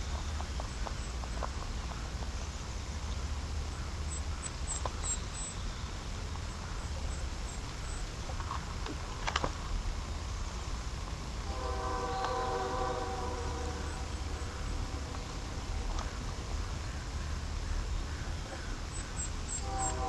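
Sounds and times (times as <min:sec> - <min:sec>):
steady low rumble: 0:00.0 - 0:20.0
nest sticks rustling and clicking: 0:08.4 - 0:09.6.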